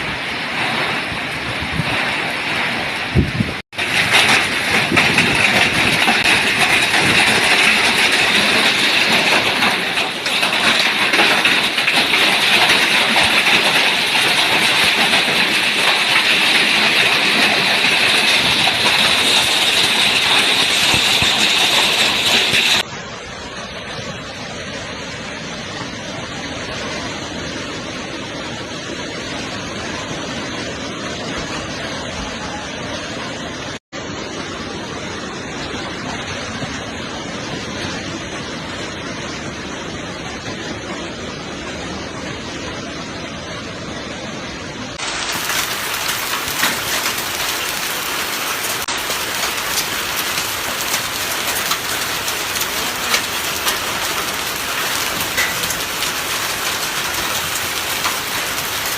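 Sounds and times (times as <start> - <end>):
heavy rain: 0.0 - 58.9
raindrops ticking: 3.7 - 22.8, 45.0 - 58.9.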